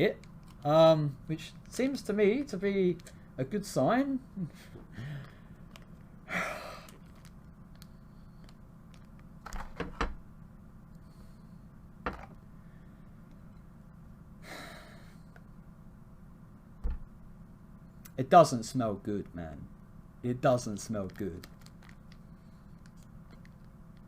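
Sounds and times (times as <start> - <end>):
low room hum: 0.0 - 24.0
packet being handled: 6.8 - 9.9, 21.0 - 23.7.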